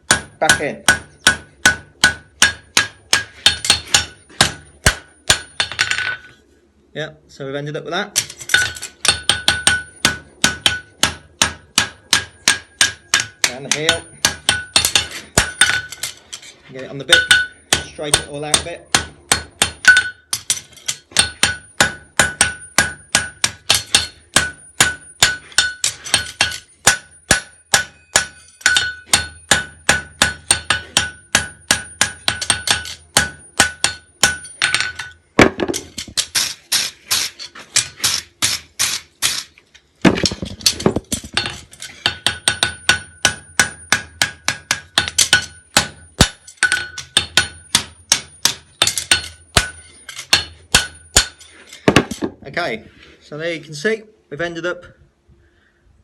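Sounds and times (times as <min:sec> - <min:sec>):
hammer striking steel on anvil: 0:00.0 - 0:06.3, 0:08.2 - 0:16.2, 0:16.9 - 0:39.5, 0:40.1 - 0:52.3
anvil ringing: 0:00.1 - 0:06.2, 0:08.2 - 0:16.2, 0:17.0 - 0:36.9, 0:40.2 - 0:52.2.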